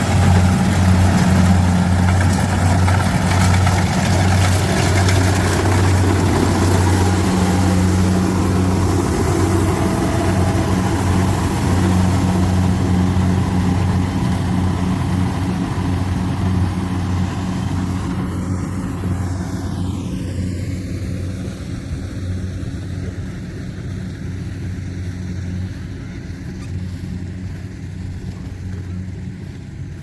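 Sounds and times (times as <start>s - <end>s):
machine clatter: 0.0s - 9.6s
harvester diesel engine running: 0.0s - 30.0s.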